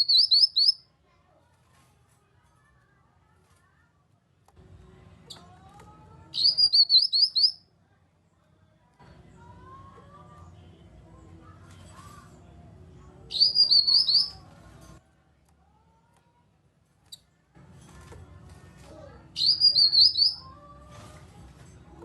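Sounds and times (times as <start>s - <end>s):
bird warbling song: 0.0s - 0.8s, 6.4s - 7.6s, 13.3s - 14.4s, 19.4s - 20.4s.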